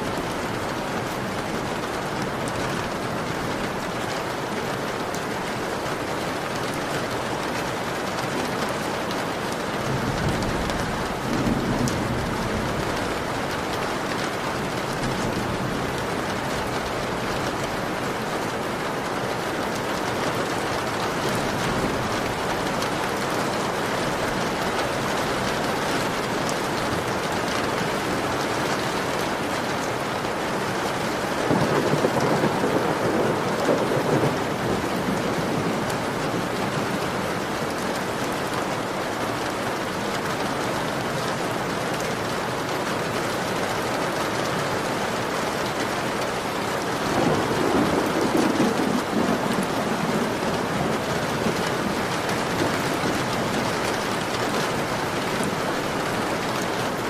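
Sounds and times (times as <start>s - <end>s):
heavy rain on window glass: 0.0s - 57.0s
thunder rumble: 31.3s - 37.2s, 47.0s - 56.7s.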